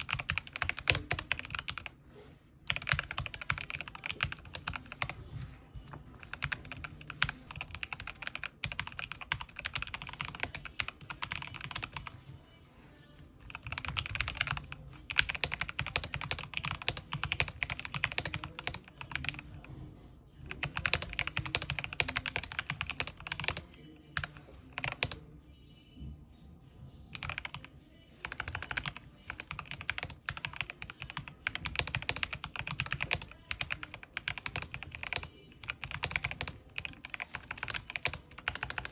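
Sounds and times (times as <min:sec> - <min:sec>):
mechanical keyboard typing: 0:00.0 - 0:02.0, 0:02.7 - 0:05.2, 0:06.2 - 0:12.2, 0:13.4 - 0:19.6, 0:20.5 - 0:25.2, 0:27.1 - 0:38.9.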